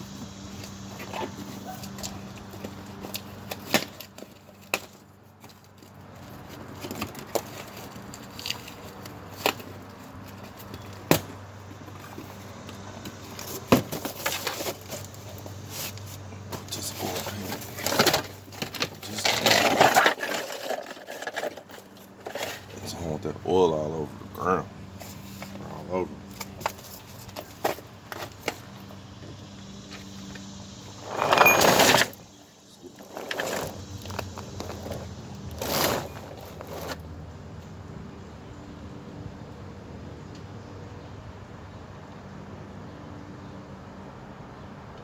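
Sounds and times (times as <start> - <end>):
scraping and rustling: 0.1 - 23.0, 30.9 - 37.1.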